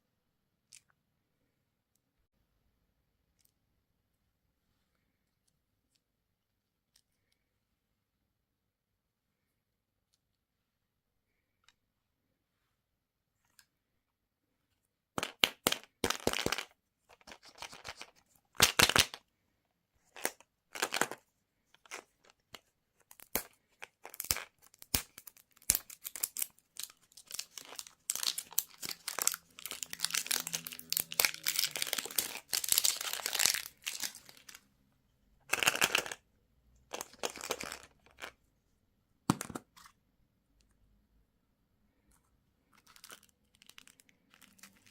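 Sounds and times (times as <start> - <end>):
plastic candy wrapper crinkling: 21.8 - 34.6, 35.4 - 36.2, 36.9 - 38.4, 42.7 - 44.9.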